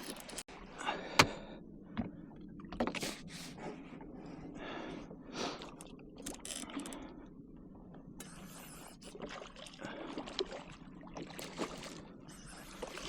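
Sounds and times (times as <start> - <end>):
water splashes: 8.2 - 13.0.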